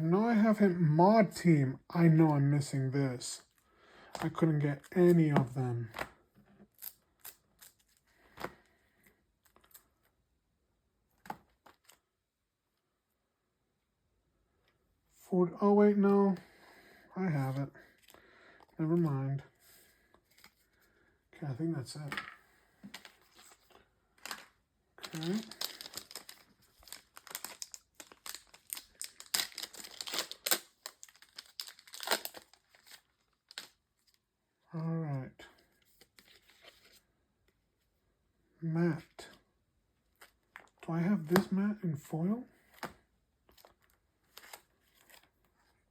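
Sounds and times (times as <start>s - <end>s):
trading cards handled: 4.1s - 8.6s, 17.9s - 20.8s, 22.0s - 33.8s, 35.8s - 37.0s, 42.6s - 45.6s.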